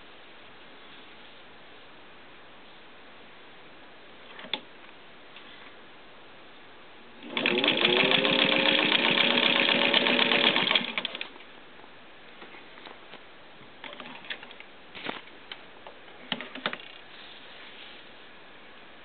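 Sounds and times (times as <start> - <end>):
sewing machine motor hum: 7.2 - 11.3.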